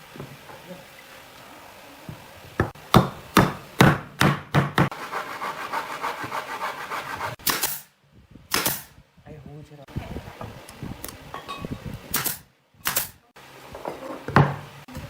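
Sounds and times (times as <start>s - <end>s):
hammer knocking on wood: 2.6s - 5.0s
scraping on wood: 4.8s - 7.4s.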